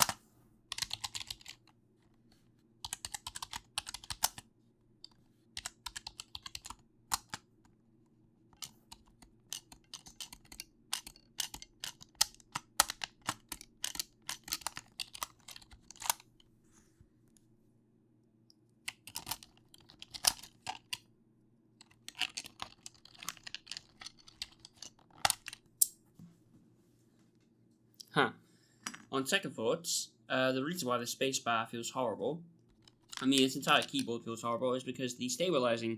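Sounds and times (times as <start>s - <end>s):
computer keyboard typing: 0.0s - 1.6s, 2.8s - 4.4s, 5.0s - 7.4s, 8.6s - 16.2s, 18.9s - 21.0s, 21.8s - 25.6s, 32.7s - 34.2s.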